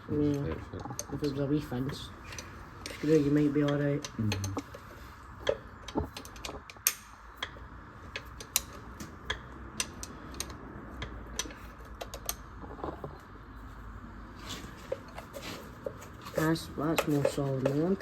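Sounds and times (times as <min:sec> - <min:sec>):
socket ratchet clicking: 0:05.4 - 0:12.4.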